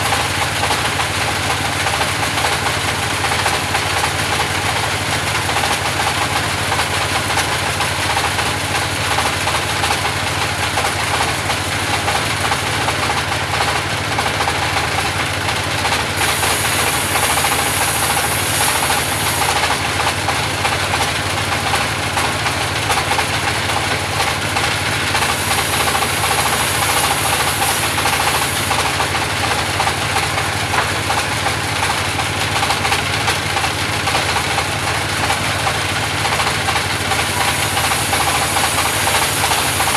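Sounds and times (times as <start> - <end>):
band sawmill engine running: 0.0 - 39.9
saw blade cutting timber hiss: 16.2 - 19.9, 25.1 - 29.9, 37.0 - 39.9.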